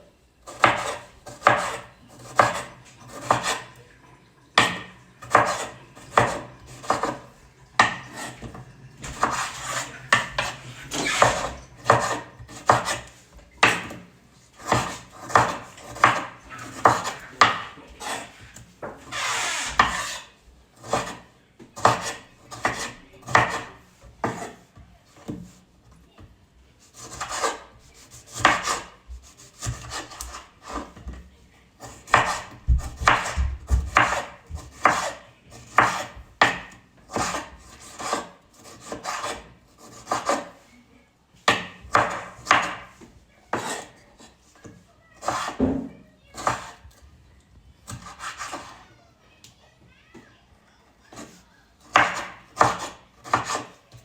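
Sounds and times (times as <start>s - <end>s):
utensil scraping and knocking: 4.6s - 14.0s, 14.6s - 21.2s, 41.5s - 47.0s.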